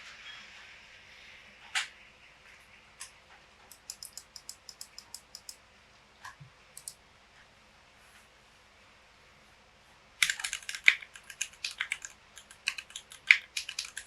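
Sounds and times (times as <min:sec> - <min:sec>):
light keyboard clicks: 0:03.0 - 0:05.6, 0:06.2 - 0:07.0, 0:10.2 - 0:14.0.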